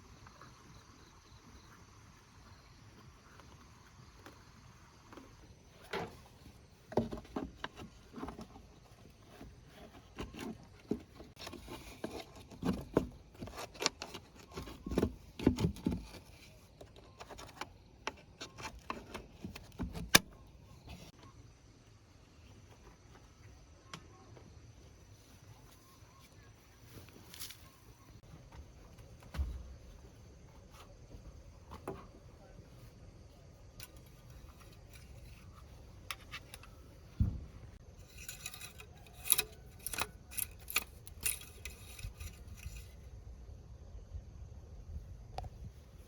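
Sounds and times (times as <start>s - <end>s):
tools knocking and clinking: 38.0s - 42.7s.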